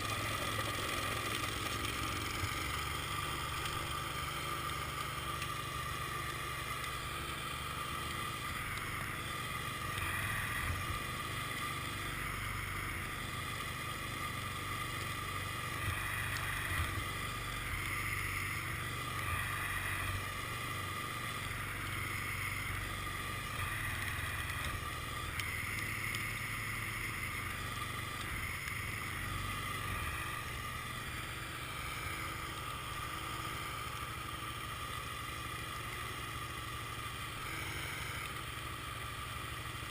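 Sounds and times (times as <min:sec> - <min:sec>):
engine hum: 0:00.0 - 0:39.9
snowblower whine: 0:00.0 - 0:39.9.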